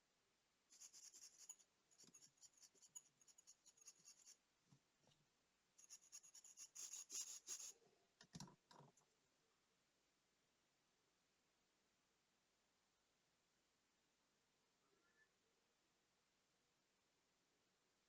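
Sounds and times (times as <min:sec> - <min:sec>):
small tool scratching hard part: 0:00.8 - 0:04.4, 0:05.8 - 0:07.8.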